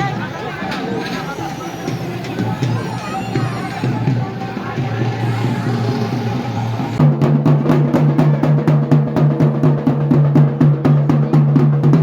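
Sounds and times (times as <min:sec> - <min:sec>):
drums in fast rhythm: 0:00.0 - 0:12.0
low drone: 0:00.9 - 0:07.0.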